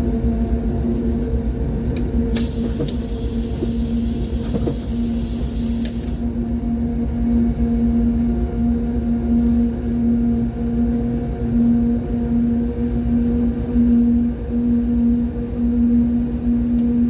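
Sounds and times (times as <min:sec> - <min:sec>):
diesel locomotive rumbling: 0:00.8 - 0:06.2
high hiss: 0:02.3 - 0:06.2.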